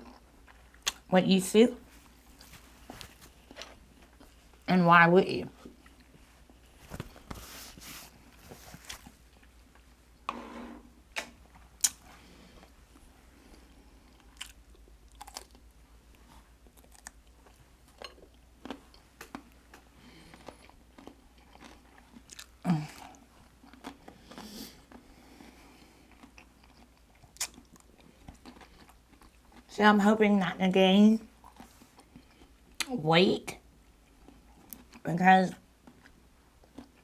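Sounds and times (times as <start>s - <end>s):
person chewing: 0.0s - 1.1s, 5.6s - 6.6s, 11.5s - 12.8s, 13.4s - 29.7s, 31.4s - 32.9s, 34.0s - 35.0s, 35.8s - 37.0s
mouth clicks and smacks: 11.2s - 12.0s, 27.3s - 27.9s.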